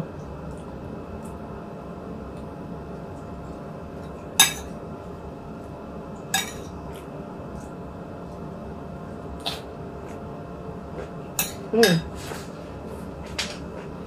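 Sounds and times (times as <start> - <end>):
steady background noise: 0.0 - 14.0
utensils clinking against plate: 6.4 - 6.7, 11.4 - 12.5.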